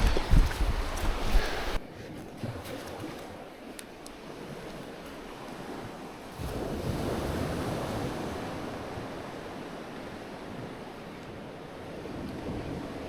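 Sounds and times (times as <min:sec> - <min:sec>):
surf rushing: 0:00.0 - 0:01.8, 0:04.4 - 0:13.0.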